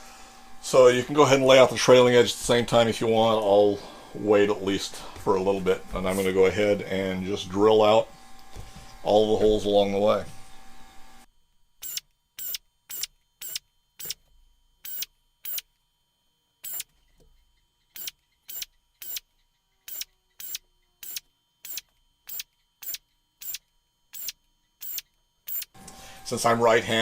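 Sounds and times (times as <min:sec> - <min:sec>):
drill bursts drilling metal: 0:11.8 - 0:14.2, 0:14.8 - 0:15.6, 0:16.6 - 0:16.9, 0:17.9 - 0:19.2, 0:19.9 - 0:25.8.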